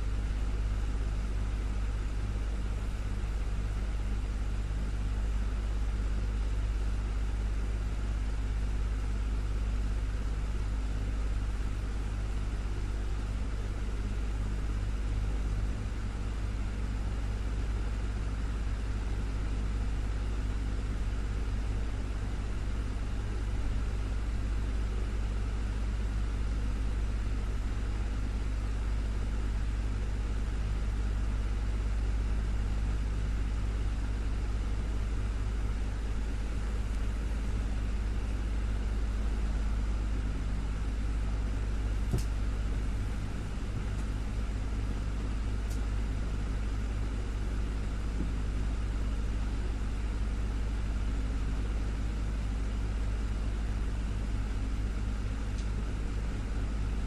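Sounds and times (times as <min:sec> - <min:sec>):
desktop fan humming: 0:00.0 - 0:57.0.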